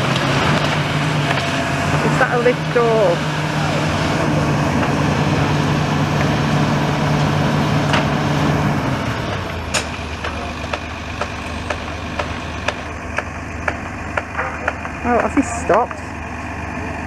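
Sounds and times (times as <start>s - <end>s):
excavator diesel engine: 0.0s - 17.0s.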